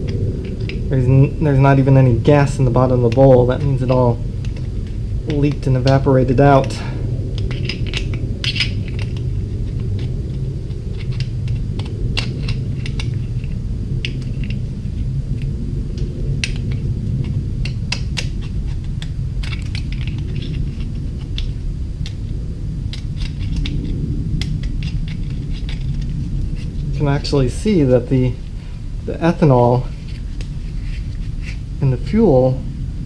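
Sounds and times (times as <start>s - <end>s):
steady low hum: 0.0s - 33.0s
small metal parts clinking: 1.6s - 14.6s, 16.4s - 22.2s, 22.9s - 26.7s.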